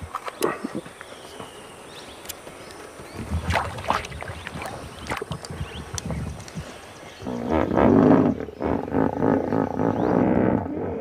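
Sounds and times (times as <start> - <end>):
water sloshing: 3.1 - 6.8
low rumbling: 3.1 - 11.0.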